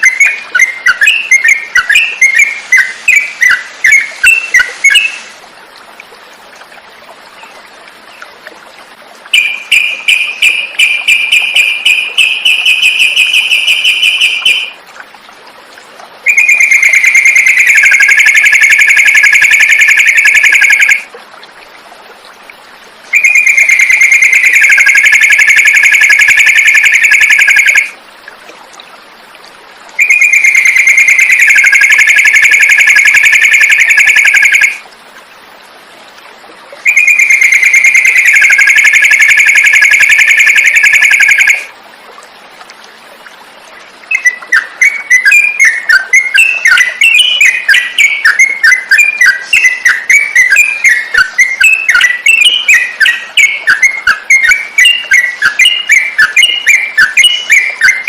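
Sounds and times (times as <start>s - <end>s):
bird chirping: 9.4s - 14.8s, 23.1s - 27.8s, 44.1s - 58.0s
songbird trilling: 44.1s - 58.0s.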